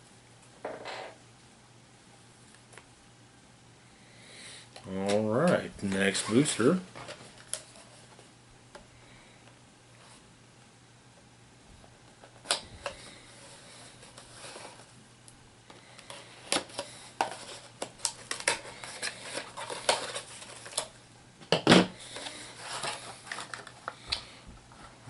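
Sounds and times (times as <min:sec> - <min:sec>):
plastic crinkling: 0:16.1 - 0:21.0, 0:22.0 - 0:24.0.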